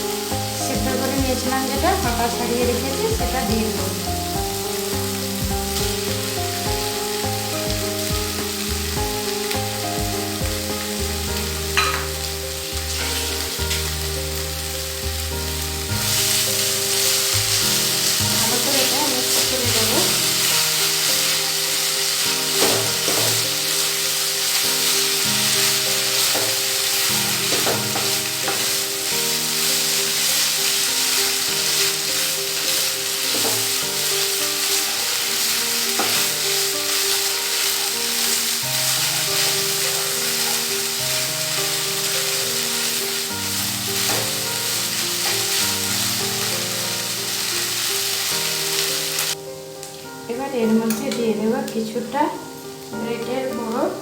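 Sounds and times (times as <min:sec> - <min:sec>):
fish sizzling in hot oil: 0:00.0 - 0:54.0
soft background music: 0:00.0 - 0:54.0
spatula scraping a pan: 0:16.0 - 0:49.3.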